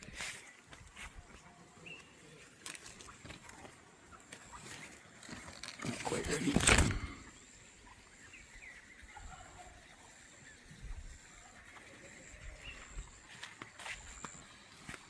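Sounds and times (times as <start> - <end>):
farm fowl chirps and squawks: 1.2 - 5.2, 7.3 - 14.1.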